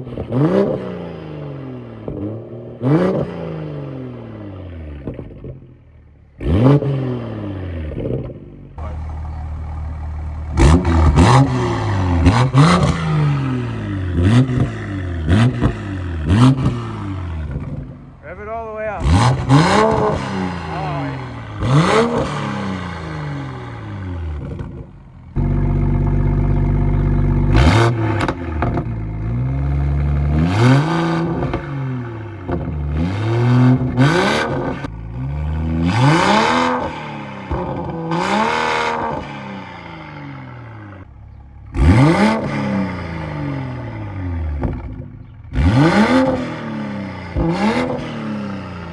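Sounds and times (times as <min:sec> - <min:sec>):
car engine revving: 0:00.0 - 0:05.7, 0:06.3 - 0:48.9
exhaust cracks: 0:07.9 - 0:40.0.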